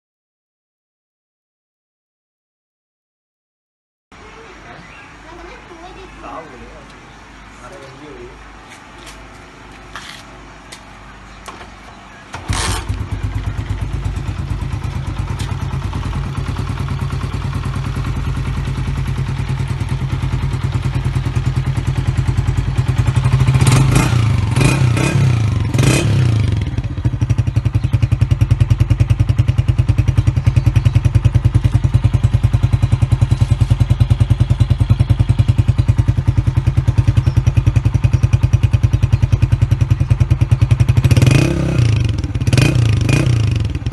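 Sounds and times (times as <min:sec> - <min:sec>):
motorcycle engine idling and revving: 0:04.2 - 0:43.9.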